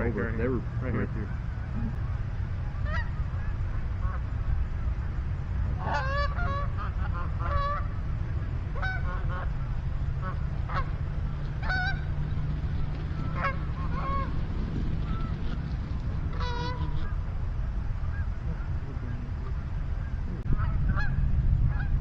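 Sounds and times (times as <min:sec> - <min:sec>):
steady low rumble: 0:00.0 - 0:22.0
goose honks and clucks: 0:00.8 - 0:04.3, 0:05.8 - 0:08.0, 0:08.7 - 0:09.6, 0:10.2 - 0:14.4, 0:15.0 - 0:15.7, 0:16.3 - 0:22.0.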